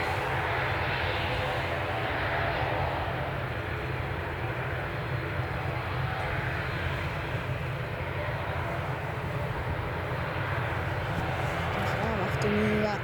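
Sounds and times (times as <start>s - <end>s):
turboprop engines running: 0.0s - 13.0s
faint steady tones: 7.0s - 13.0s.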